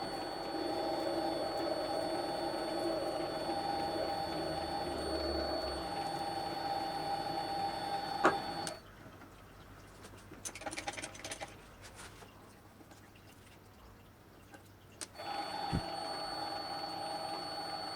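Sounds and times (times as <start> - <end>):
small electric motor whining: 0.0 - 8.8, 15.2 - 17.9.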